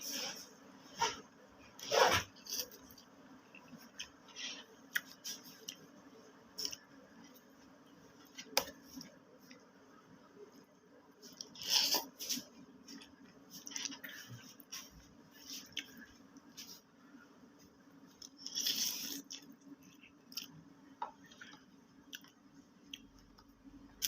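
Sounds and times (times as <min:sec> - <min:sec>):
person eating noodles: 0:11.3 - 0:14.8, 0:18.2 - 0:20.6.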